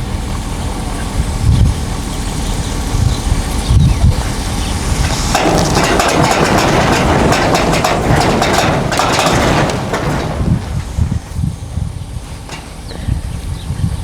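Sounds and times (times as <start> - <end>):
truck engine running: 0.0 - 14.0
loud scraping and rattling: 4.1 - 14.0.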